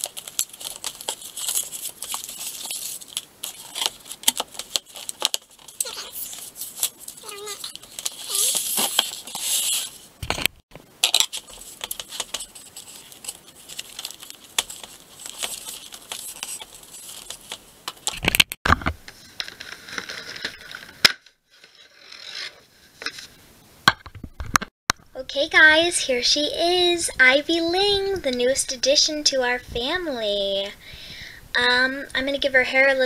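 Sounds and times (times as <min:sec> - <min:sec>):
packaging rustling and crinkling: 0:00.0 - 0:18.6.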